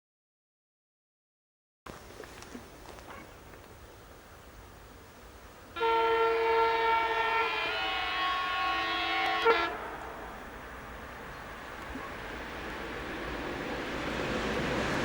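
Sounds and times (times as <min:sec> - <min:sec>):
train horn chord: 0:05.8 - 0:10.4.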